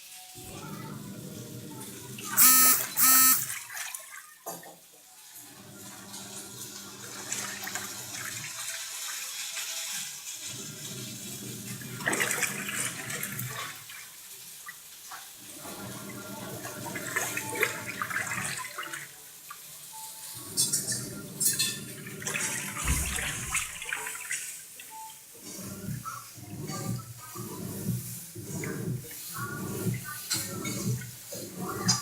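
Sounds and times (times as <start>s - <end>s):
washing machine hum: 0.0s - 4.4s, 5.2s - 32.0s
washing machine water churning: 0.0s - 32.0s
short electronic beeps: 2.4s - 3.5s.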